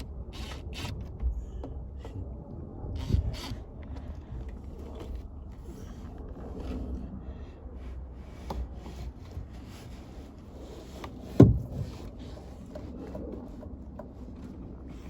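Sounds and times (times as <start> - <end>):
low steady rumble: 0.0 - 15.0
light knocks and rubs: 8.3 - 14.6.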